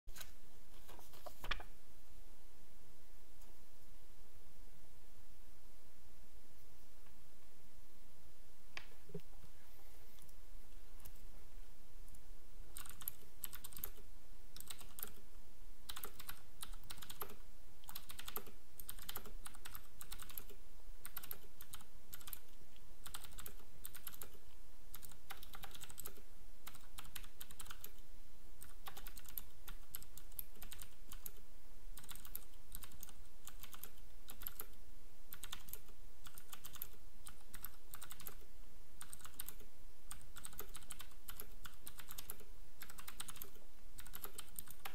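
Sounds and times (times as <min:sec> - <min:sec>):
clicky mechanical keyboard typing: 0:12.7 - 0:14.0, 0:14.6 - 0:15.2, 0:15.9 - 0:28.0, 0:28.6 - 0:31.4, 0:32.0 - 0:38.4, 0:39.0 - 0:44.9.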